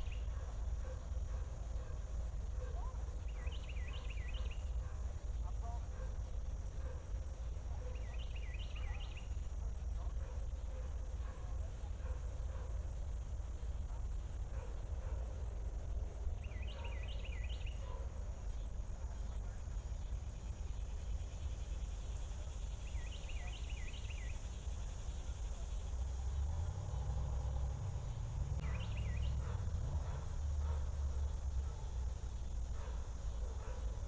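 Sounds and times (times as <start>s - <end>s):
low rumble with faint hiss: 0.0s - 34.0s
bird chirping: 2.7s - 4.8s, 7.8s - 9.4s, 16.4s - 18.1s, 20.7s - 25.6s, 27.3s - 34.0s.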